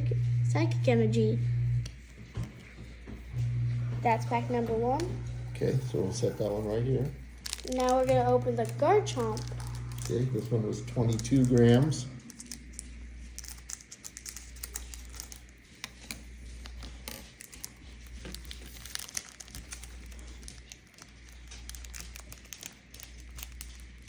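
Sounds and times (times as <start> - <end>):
foil pack crinkling: 5.6 - 24.0
cards being handled: 7.3 - 24.0.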